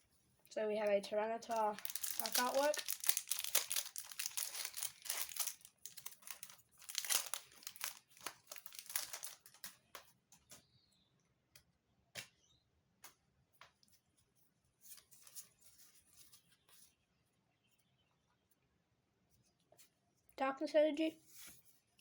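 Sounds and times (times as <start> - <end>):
foil wrapper tearing and crinkling: 1.5 - 9.7
cards rustling and clicking: 1.5 - 10.2.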